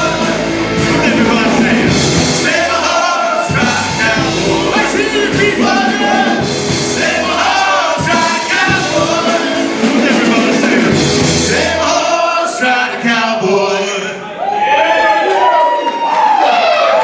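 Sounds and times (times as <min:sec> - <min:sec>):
live country-rock band: 0:00.0 - 0:12.8
lead vocal singing: 0:00.0 - 0:14.3.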